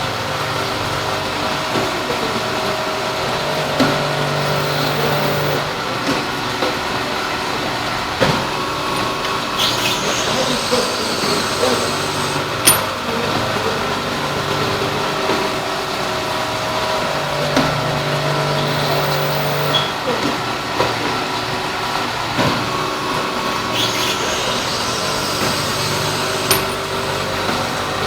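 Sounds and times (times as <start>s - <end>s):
machinery motor hum: 0.0s - 20.6s, 21.2s - 28.0s
machinery clicks and clunks: 0.9s - 6.9s, 8.2s - 21.2s, 22.0s - 28.0s
deep intermittent hum: 2.3s - 5.7s.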